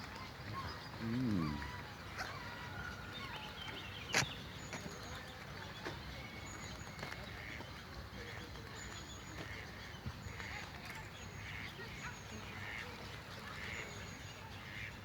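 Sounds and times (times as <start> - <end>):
small birds chirping: 0.1 - 2.6.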